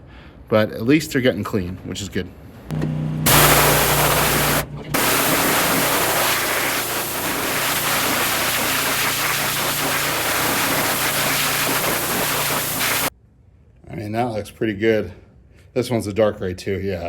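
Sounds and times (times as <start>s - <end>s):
pump humming: 2.7s - 13.1s
pressure washer water hiss: 3.3s - 13.1s.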